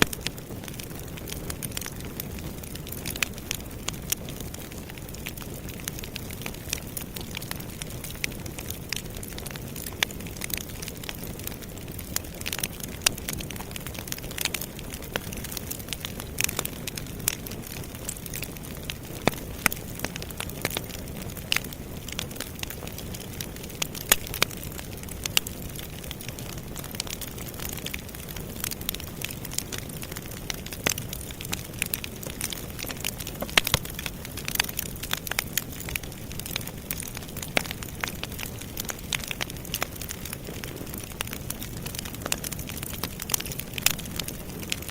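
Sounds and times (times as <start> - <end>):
campfire crackling and popping: 0.0 - 44.9.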